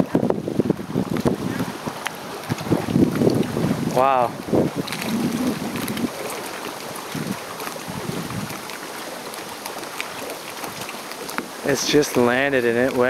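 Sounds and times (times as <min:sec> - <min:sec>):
storm wind: 0:00.0 - 0:08.7
rain: 0:00.0 - 0:13.0.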